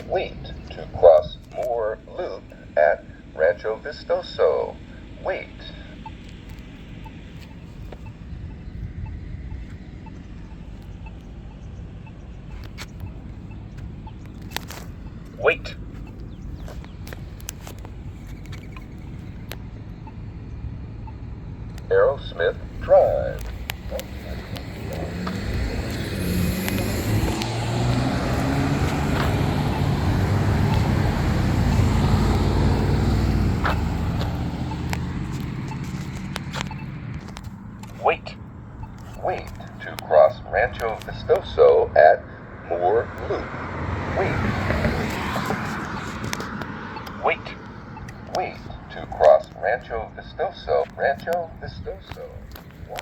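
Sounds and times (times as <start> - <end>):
low outdoor rumble: 0.0 - 53.0
motor vehicles driving past: 0.0 - 53.0
sharp clicks: 21.7 - 30.0, 31.7 - 38.2
push button locator beeps: 33.6 - 37.1, 38.0 - 41.2, 46.6 - 50.0.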